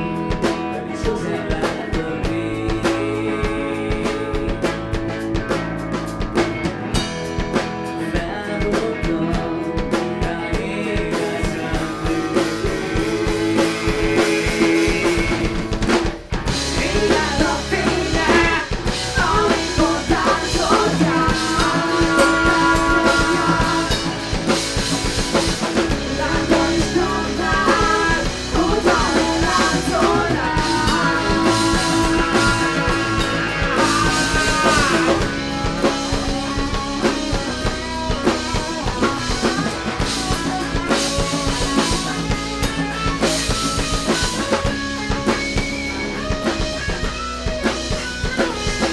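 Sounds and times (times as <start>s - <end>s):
person singing: 0.0s - 5.2s, 7.9s - 42.3s
live rock band playing: 0.0s - 48.9s.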